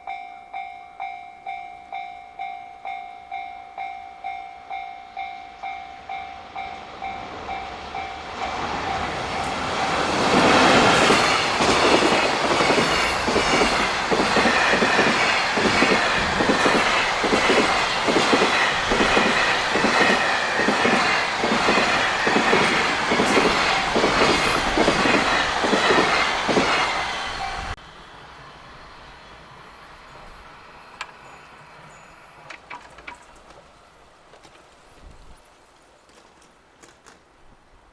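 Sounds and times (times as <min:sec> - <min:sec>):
train wheels clacking over rail joints: 0:07.6 - 0:27.8, 0:29.4 - 0:34.8.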